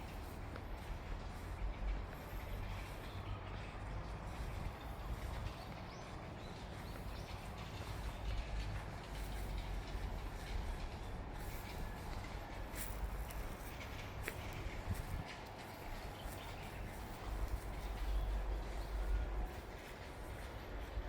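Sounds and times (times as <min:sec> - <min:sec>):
footsteps on a path: 0:11.3 - 0:20.6.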